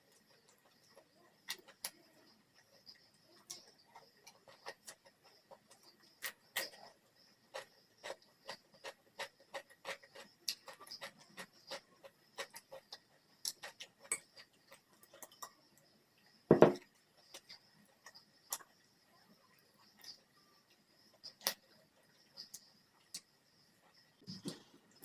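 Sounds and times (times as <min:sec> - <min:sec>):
loud thump: 0:16.5 - 0:16.8.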